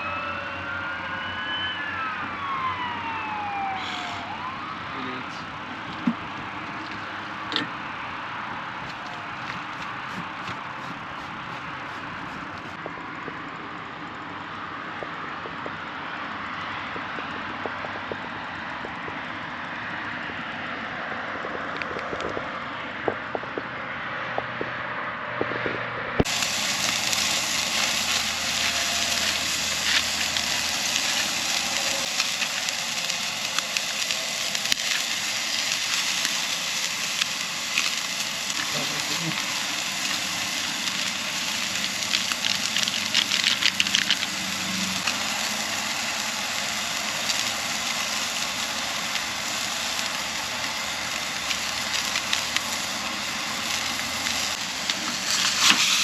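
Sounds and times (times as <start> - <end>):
food frying in a pan: 26.2 - 56.0.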